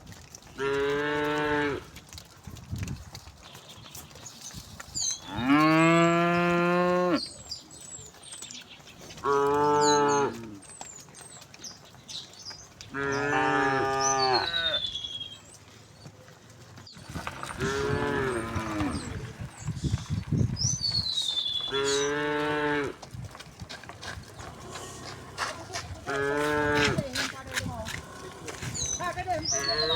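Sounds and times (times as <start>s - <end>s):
cows mooing: 0.6s - 1.9s, 5.2s - 7.3s, 9.2s - 10.7s, 12.9s - 14.9s, 17.2s - 19.6s, 21.6s - 23.2s, 24.0s - 29.9s
birds chirping faintly: 3.4s - 23.0s, 23.9s - 29.9s.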